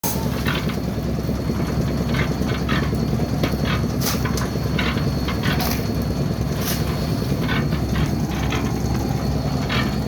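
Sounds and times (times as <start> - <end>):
machine engine rumbling: 0.0 - 10.0
short clatters and scrapes: 3.5 - 5.9, 6.5 - 8.7.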